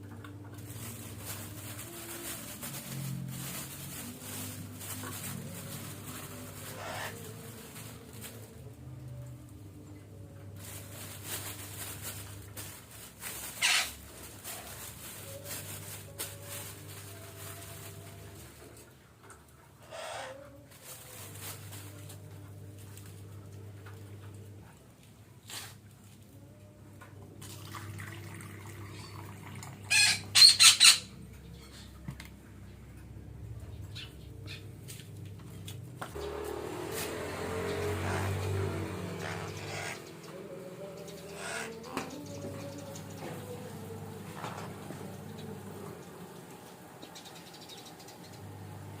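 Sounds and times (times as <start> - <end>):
low steady hum: 0.0 - 13.4, 14.1 - 37.6
parakeet squawk: 6.8 - 7.2, 13.6 - 14.0, 19.8 - 20.4, 29.9 - 31.1, 39.2 - 40.2, 41.3 - 41.8.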